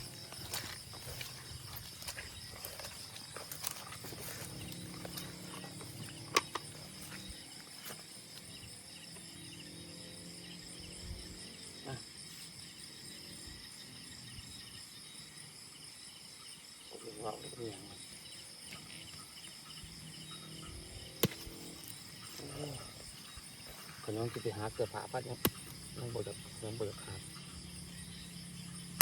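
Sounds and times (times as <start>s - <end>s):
insects chorus: 0.0s - 29.0s
handling clicks and knocks: 5.1s - 6.9s.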